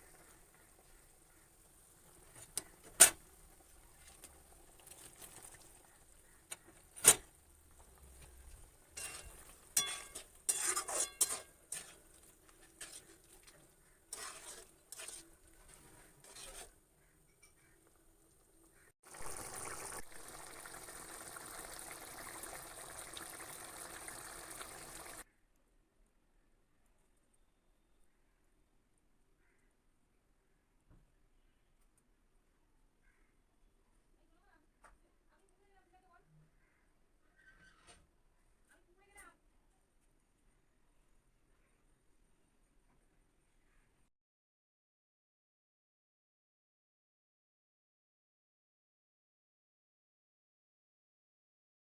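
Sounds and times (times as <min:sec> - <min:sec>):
metal spoon clinking against pan: 0:09.0 - 0:12.0.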